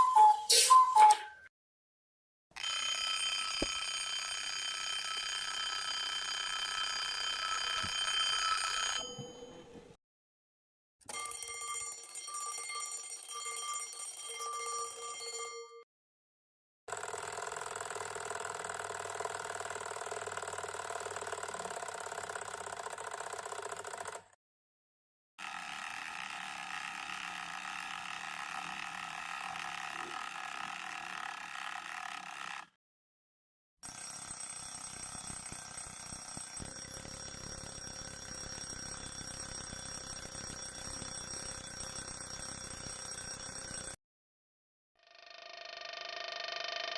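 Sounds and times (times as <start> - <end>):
alarm clock ringing: 2.6 - 9.6, 11.1 - 15.8, 33.8 - 44.0.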